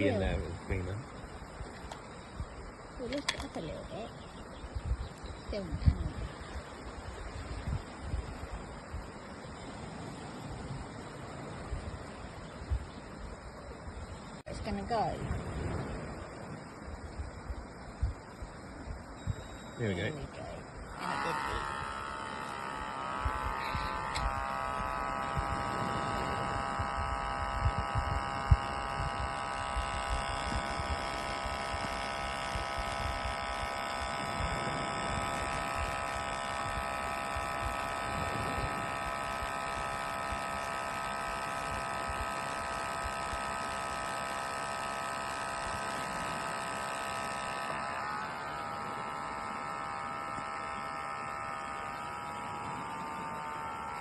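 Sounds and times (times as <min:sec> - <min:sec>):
espresso machine pump humming: 0:19.0 - 0:54.0.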